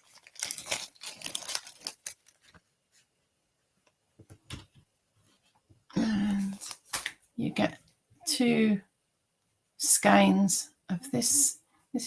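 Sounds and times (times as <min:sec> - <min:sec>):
plastic packet crinkling: 0:00.0 - 0:02.7.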